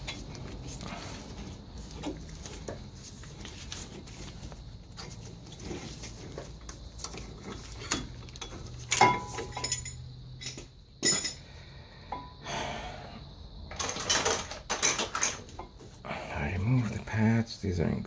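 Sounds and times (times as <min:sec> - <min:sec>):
metal clinks of brake parts: 0:07.5 - 0:11.5.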